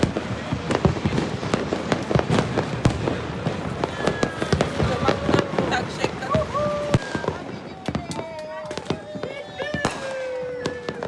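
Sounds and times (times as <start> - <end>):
firecrackers crackling: 0.0 - 11.0
fireworks bangs: 0.0 - 11.0.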